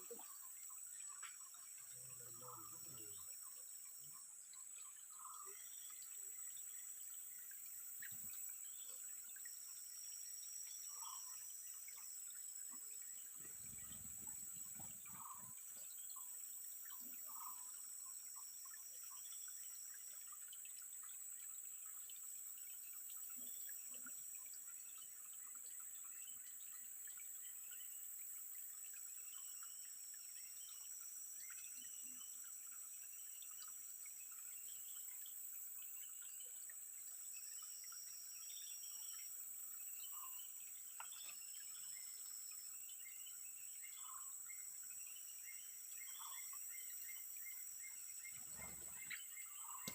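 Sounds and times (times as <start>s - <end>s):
lower insect buzz: 0.0s - 20.5s, 42.8s - 49.9s
small birds chirping: 12.7s - 19.7s, 42.9s - 49.9s.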